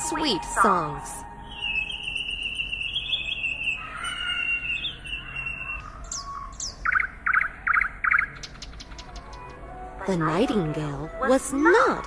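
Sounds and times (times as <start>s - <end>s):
songbird singing: 0.0s - 12.0s.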